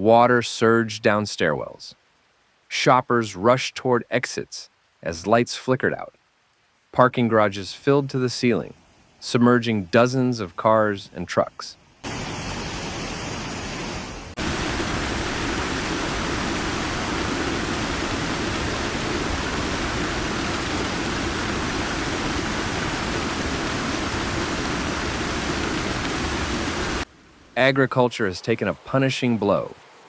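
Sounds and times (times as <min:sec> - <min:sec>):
floodwater rushing: 0:14.4 - 0:30.0.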